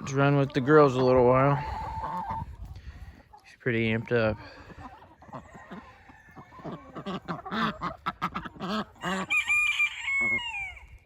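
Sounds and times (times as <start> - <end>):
chickens clucking and squawking: 0.0 - 11.0
rooster crowing: 9.1 - 10.8.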